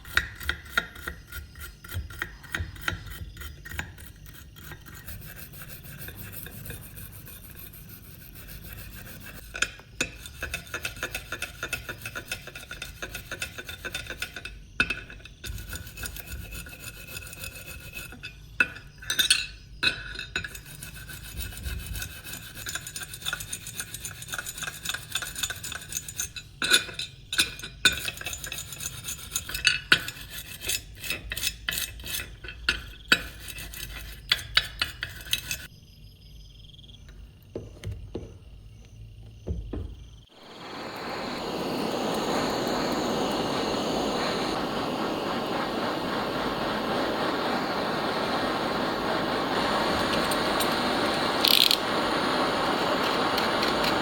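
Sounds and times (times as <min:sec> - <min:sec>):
hand scraping on knife: 0:00.0 - 0:14.4, 0:28.0 - 0:35.7.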